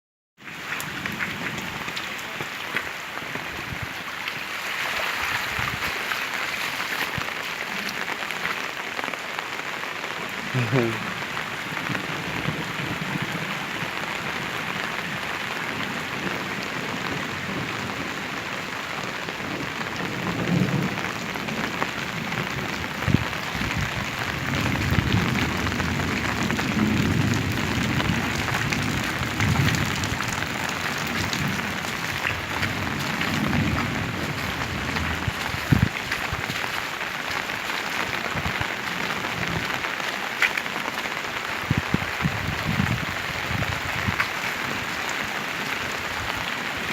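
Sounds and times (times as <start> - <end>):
heavy rain pouring: 0.4 - 46.9
raindrops knocking: 19.0 - 46.9
low rumbling: 24.3 - 36.5.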